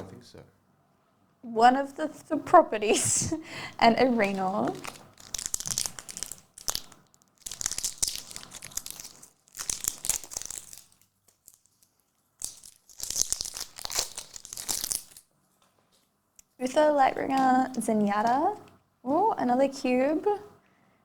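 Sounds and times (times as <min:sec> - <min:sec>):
wrapper tearing and crinkling: 0:04.0 - 0:15.3.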